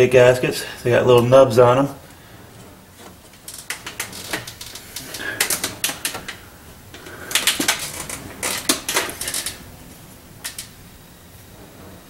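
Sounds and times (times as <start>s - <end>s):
gaskets clicking and clattering: 2.0s - 10.8s.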